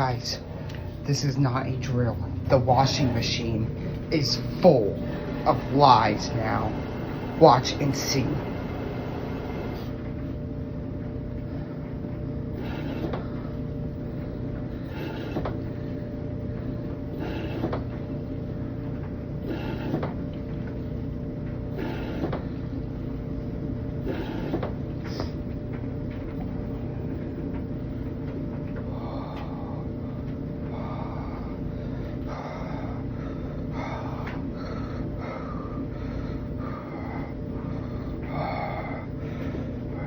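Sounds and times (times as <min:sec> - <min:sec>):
washing machine motor hum: 0:00.0 - 0:40.0
washing machine drum swishing: 0:17.0 - 0:22.7.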